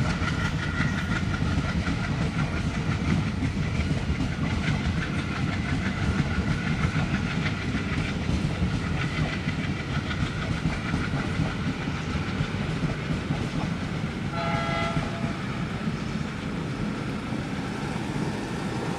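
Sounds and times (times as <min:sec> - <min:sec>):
low rumble of train: 0:00.0 - 0:18.9
train wheels clattering: 0:00.0 - 0:18.9
multi-tone horn blast: 0:14.3 - 0:15.4.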